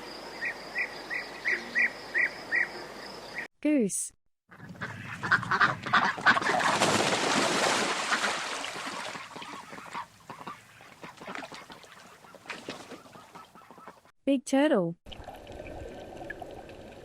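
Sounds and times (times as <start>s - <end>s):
geese honking: 4.5s - 6.6s, 9.1s - 14.1s.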